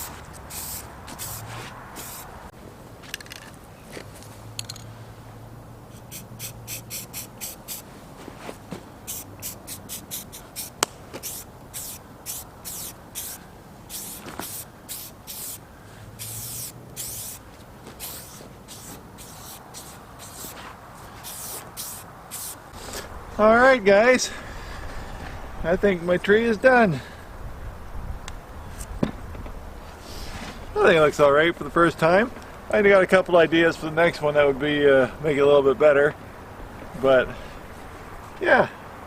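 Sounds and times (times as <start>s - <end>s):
spray-paint can hissing: 0.0s - 2.3s, 5.9s - 7.8s, 9.1s - 15.6s, 16.2s - 17.4s, 18.0s - 20.6s, 21.2s - 22.6s.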